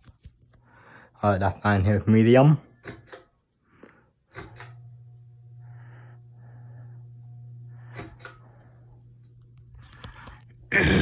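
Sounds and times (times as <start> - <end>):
ceiling fan motor hum: 4.4 - 10.7.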